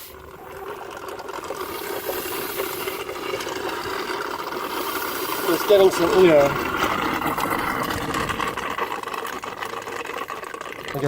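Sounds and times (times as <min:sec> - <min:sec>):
engine drone: 0:00.0 - 0:11.0
liquid rushing through tube: 0:00.0 - 0:11.0.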